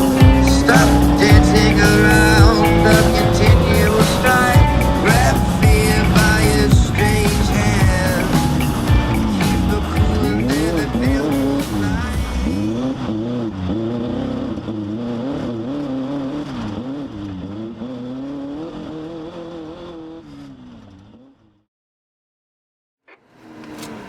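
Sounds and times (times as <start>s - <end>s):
race vehicle engine revving: 0.0s - 21.5s, 23.1s - 24.0s.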